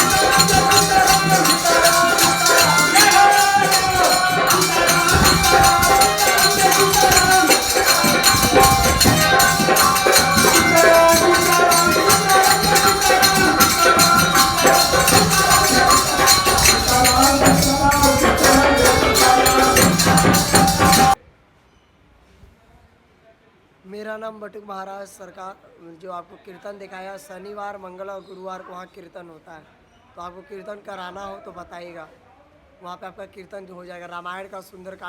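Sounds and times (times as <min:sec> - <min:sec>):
devotional chanting: 0:00.0 - 0:21.2
rattling jingle percussion: 0:00.0 - 0:21.2.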